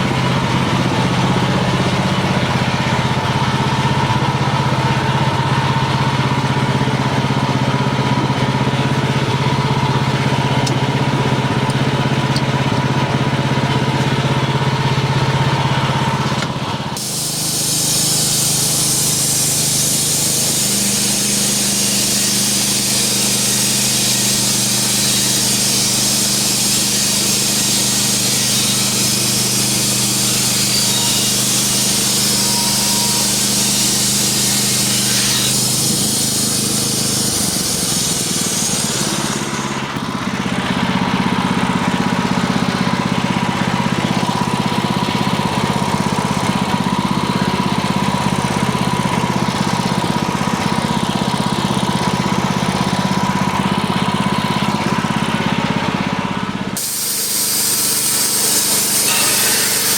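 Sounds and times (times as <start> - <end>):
sawmill engine humming: 0.0 - 59.9
band blade cutting board hiss: 17.0 - 39.9, 56.8 - 59.9.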